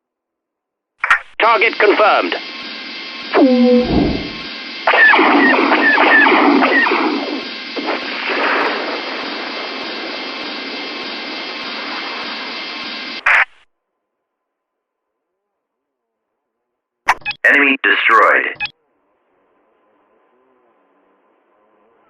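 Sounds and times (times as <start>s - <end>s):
noisy burst: 1.0s - 13.6s
radio squelch burst: 1.0s - 13.7s, 17.1s - 18.7s
radio static hiss: 1.0s - 13.7s, 17.1s - 18.7s
laser blaster shots: 3.4s - 9.1s.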